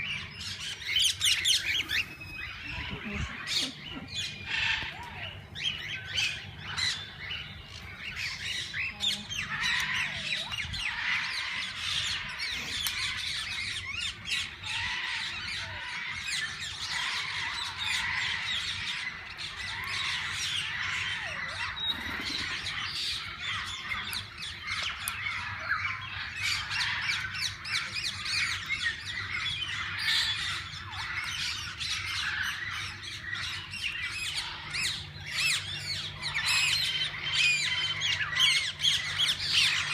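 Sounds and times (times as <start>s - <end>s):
parakeets chirping and squawking: 0.0s - 39.9s.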